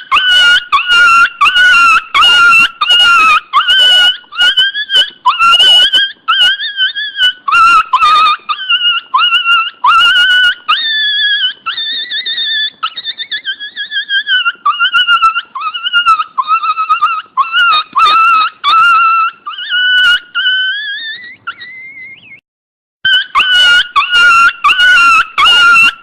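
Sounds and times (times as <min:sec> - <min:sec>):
dog whining and yelping: 0:00.0 - 0:22.4, 0:23.1 - 0:26.0.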